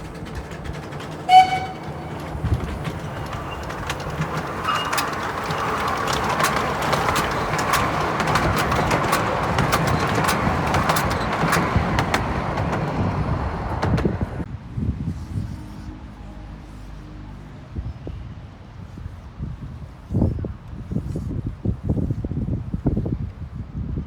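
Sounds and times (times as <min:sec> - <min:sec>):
miniature train rumbling past: 0:00.0 - 0:14.5
wheels clicking on track: 0:00.0 - 0:14.5
wind noise on microphone: 0:00.0 - 0:24.0.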